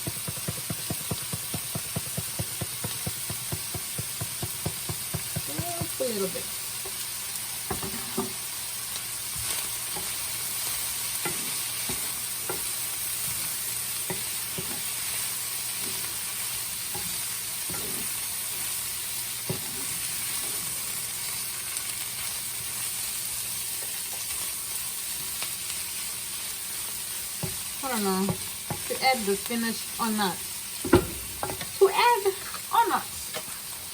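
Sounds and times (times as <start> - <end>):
utensil knocking against pan: 0.0 - 6.0, 30.8 - 31.7
food sizzling in a pan: 0.0 - 33.9.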